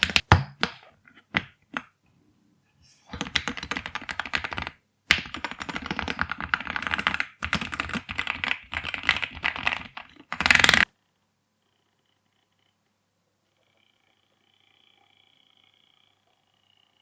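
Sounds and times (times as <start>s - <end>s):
mechanical keyboard typing: 3.2s - 10.9s.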